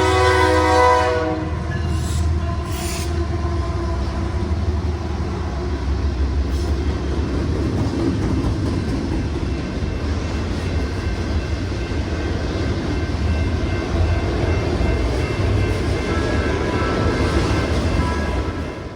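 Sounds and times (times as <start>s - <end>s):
train wheels rumbling on rails: 0.0s - 18.9s.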